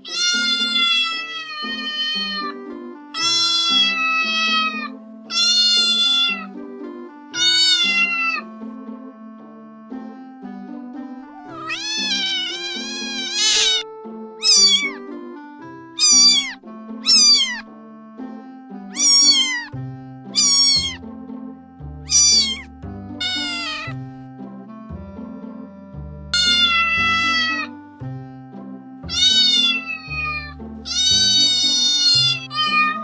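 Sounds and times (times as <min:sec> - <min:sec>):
cat meowing: 0:00.0 - 0:02.6, 0:03.2 - 0:06.6, 0:07.4 - 0:08.5, 0:11.4 - 0:15.0, 0:16.0 - 0:17.6, 0:18.9 - 0:19.8, 0:20.4 - 0:21.0, 0:22.1 - 0:24.0, 0:26.4 - 0:27.8, 0:29.1 - 0:33.0
background music: 0:00.0 - 0:33.0.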